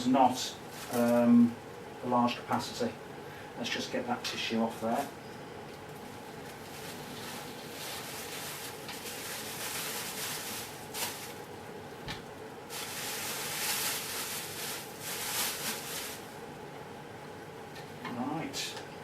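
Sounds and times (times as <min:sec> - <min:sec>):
tissue rustling and scraping: 0:06.4 - 0:11.4, 0:12.7 - 0:16.4.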